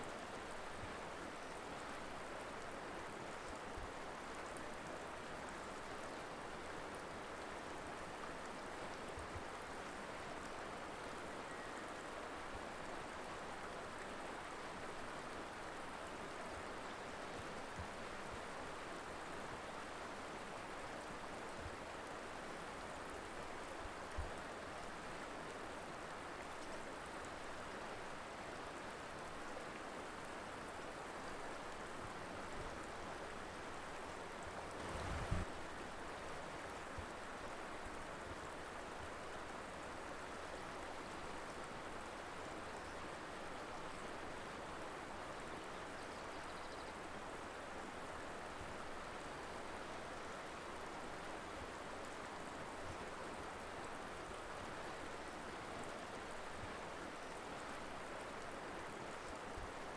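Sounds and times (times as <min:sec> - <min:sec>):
river water rushing: 0:34.7 - 0:35.7.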